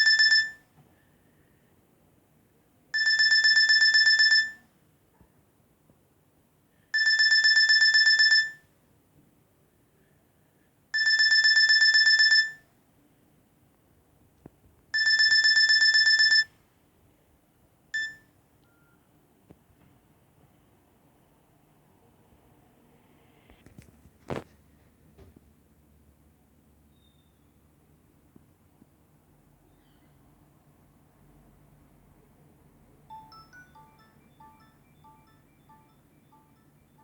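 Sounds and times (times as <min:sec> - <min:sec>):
high electronic ringtone trilling: 0:33.1 - 0:37.0.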